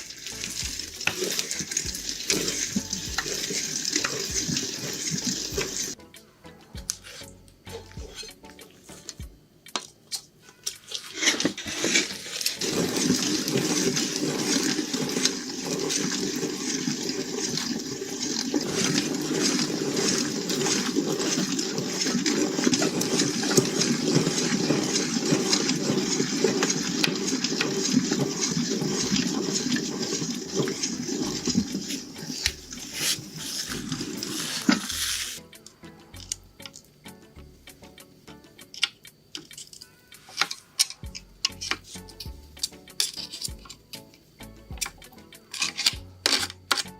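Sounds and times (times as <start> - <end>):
meat grinder churning: 0.0 - 6.0, 10.9 - 35.4.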